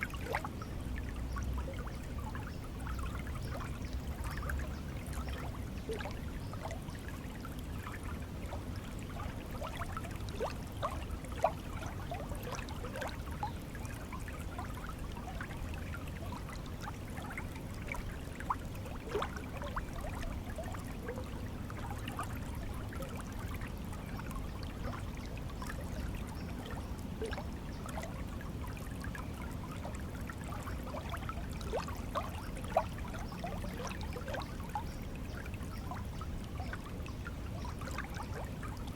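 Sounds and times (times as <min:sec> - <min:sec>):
water splashes: 0:00.0 - 0:06.8
stream water flowing: 0:00.0 - 0:38.9.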